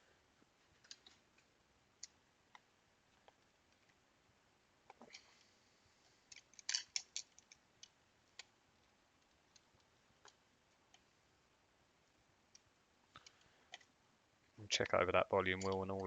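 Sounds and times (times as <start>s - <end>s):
plastic parts and tools clicking: 6.3s - 8.5s.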